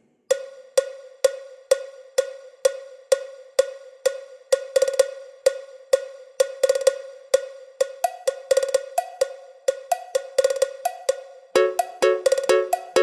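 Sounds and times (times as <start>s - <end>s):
cowbell-like percussive hits: 0.3s - 13.0s.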